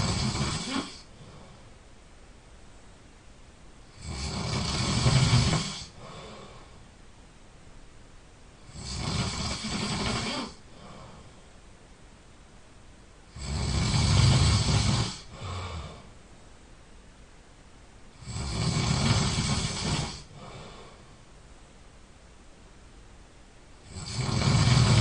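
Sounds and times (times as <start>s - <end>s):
person snoring loudly: 0.0s - 1.5s, 3.9s - 6.7s, 8.6s - 11.2s, 13.3s - 16.1s, 18.2s - 21.0s, 23.8s - 25.0s
quiet breathing: 0.0s - 2.2s, 3.8s - 7.4s, 8.5s - 12.2s, 13.2s - 16.5s, 18.1s - 22.0s.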